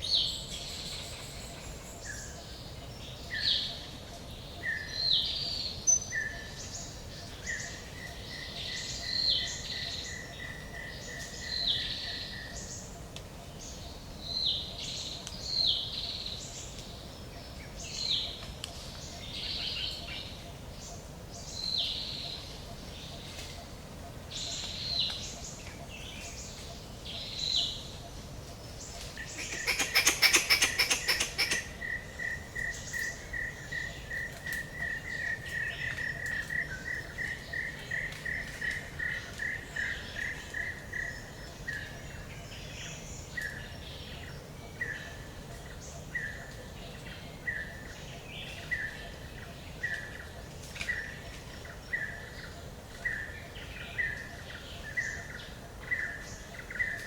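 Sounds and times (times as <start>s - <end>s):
birds chirping: 0.0s - 57.0s
low background hiss: 0.0s - 57.0s.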